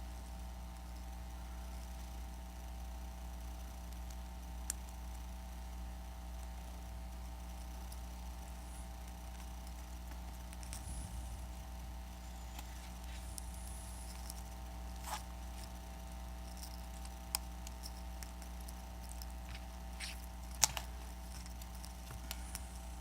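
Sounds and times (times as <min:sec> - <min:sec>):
steady low hum: 0:00.0 - 0:23.0
small tools clicking and tapping: 0:16.4 - 0:22.8.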